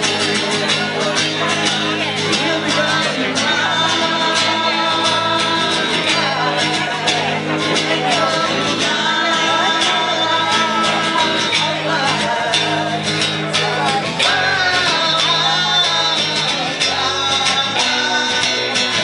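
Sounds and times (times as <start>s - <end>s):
live band playing: 0.0s - 19.0s
person singing: 0.0s - 19.0s.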